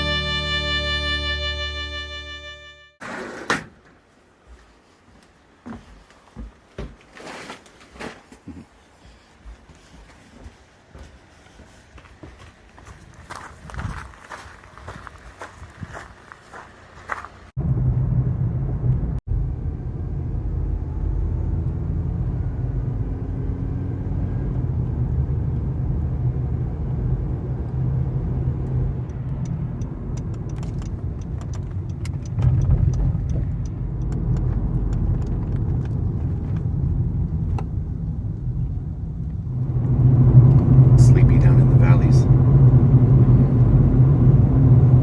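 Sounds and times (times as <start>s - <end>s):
car engine and road rumble: 0.0s - 3.0s, 12.5s - 45.0s.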